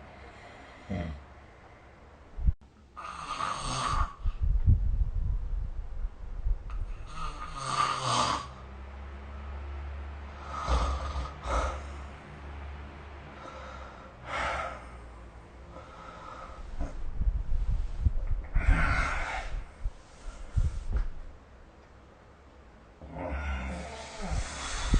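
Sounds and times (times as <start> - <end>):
person snoring: 0.2 - 1.2, 3.0 - 4.2, 7.0 - 8.6, 10.3 - 12.0, 18.5 - 19.7, 23.0 - 24.9.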